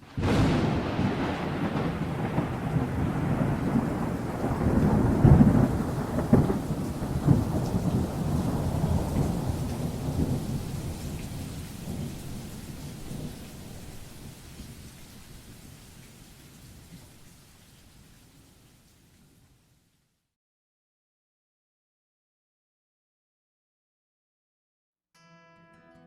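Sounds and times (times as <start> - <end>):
thunder cracks: 0.0 - 14.2
rolling thunder: 0.0 - 14.4
falling rain: 0.0 - 20.1.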